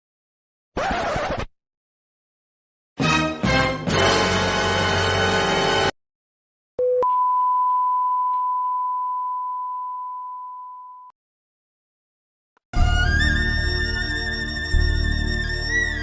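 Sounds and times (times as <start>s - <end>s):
music clip: 12.7s - 16.0s.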